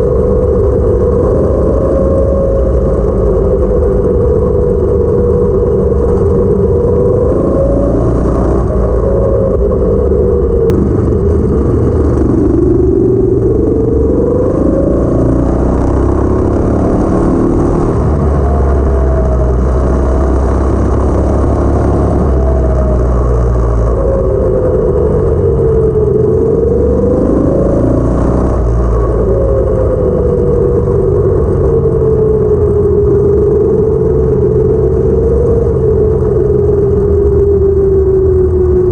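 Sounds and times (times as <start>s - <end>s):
go-kart engine revving: 10.7s - 37.3s.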